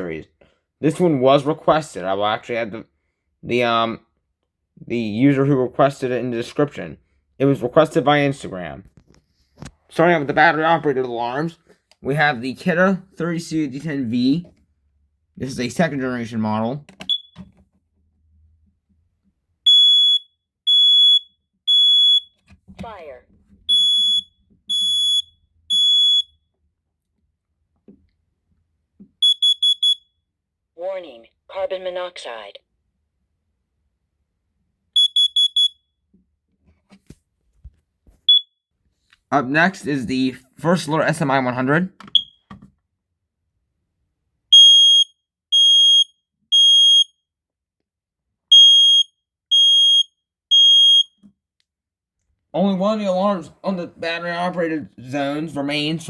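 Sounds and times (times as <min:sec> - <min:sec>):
smoke alarm long beep: 0:17.1 - 0:17.4, 0:19.7 - 0:22.4, 0:23.7 - 0:26.4, 0:29.2 - 0:30.2, 0:35.0 - 0:35.9, 0:38.3 - 0:38.6, 0:44.5 - 0:47.2, 0:48.5 - 0:51.2
alarm short beeps: 0:29.2 - 0:30.0.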